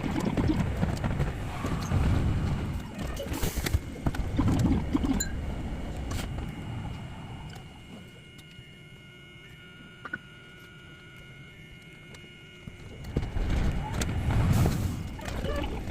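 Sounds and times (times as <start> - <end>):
sped-up tram running rattle: 0.0 - 7.8, 13.0 - 15.9.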